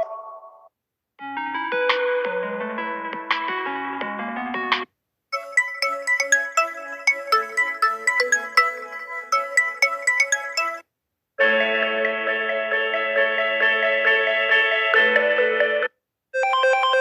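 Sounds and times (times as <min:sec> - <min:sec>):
ringtone of held tones: 0:00.0 - 0:02.6, 0:05.4 - 0:12.9, 0:14.8 - 0:17.0
bell-like phone ringtone: 0:05.4 - 0:10.8, 0:15.8 - 0:17.0.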